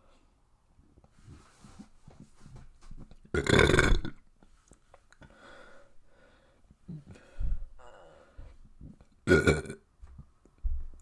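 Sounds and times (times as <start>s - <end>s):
quiet breaths: 0.0s - 2.8s, 4.4s - 9.2s
person burping: 3.3s - 4.2s, 9.2s - 9.9s.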